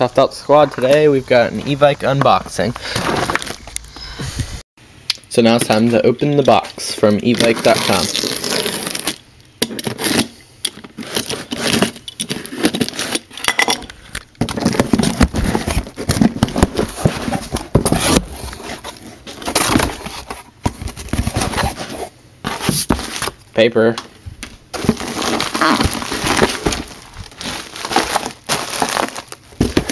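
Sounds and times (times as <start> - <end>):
cardboard and paper rustling: 2.5 - 3.7, 7.2 - 9.2, 9.8 - 13.3, 14.4 - 23.4, 24.7 - 29.9
tape tearing: 7.2 - 13.4, 14.4 - 23.4, 24.8 - 29.9.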